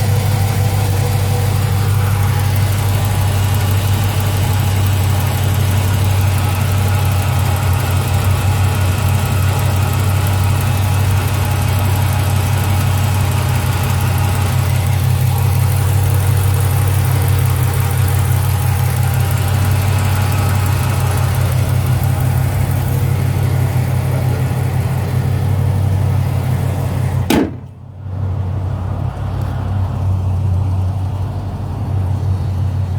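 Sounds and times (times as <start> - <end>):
engine ticking: 0.0 - 27.9
car engine idling: 0.0 - 28.2, 29.0 - 32.9
sharp click: 27.3 - 27.8.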